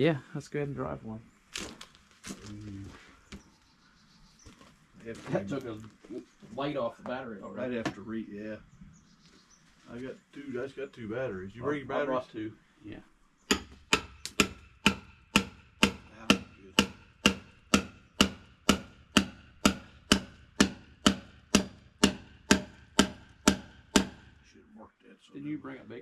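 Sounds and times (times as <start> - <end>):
hammer striking metal anchor: 13.5 - 24.3.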